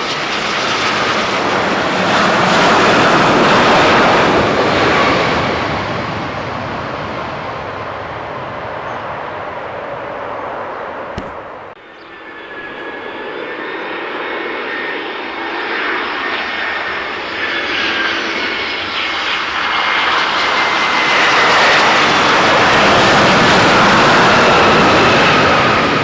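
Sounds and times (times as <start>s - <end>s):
airliner engines roaring: 0.0s - 26.0s.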